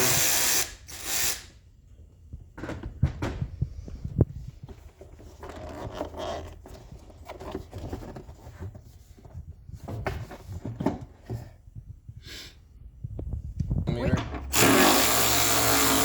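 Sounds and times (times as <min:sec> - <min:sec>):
parts being handled: 0:02.0 - 0:12.2.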